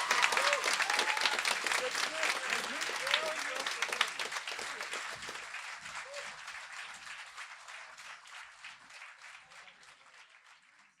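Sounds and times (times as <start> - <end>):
audience applause: 0.0 - 11.0.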